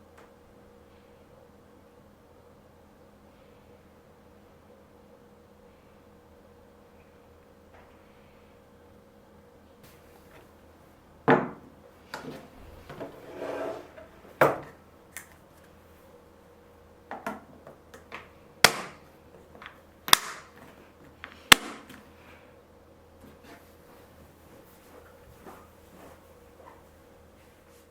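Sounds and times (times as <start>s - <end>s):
scraping rub: 12.2s - 14.2s.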